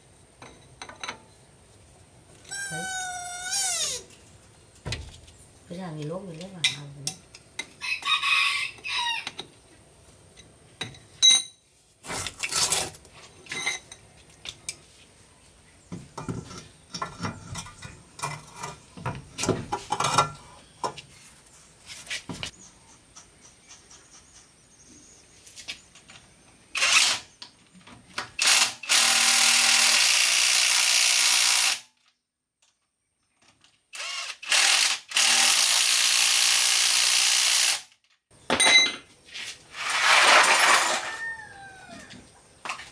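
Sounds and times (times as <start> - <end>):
metal tools clinking: 38.0 - 39.1, 39.8 - 41.4.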